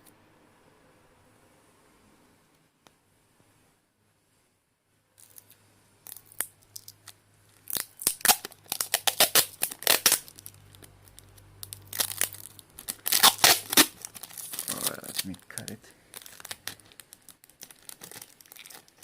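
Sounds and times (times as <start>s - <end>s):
tape ripping off roll: 7.6s - 19.0s.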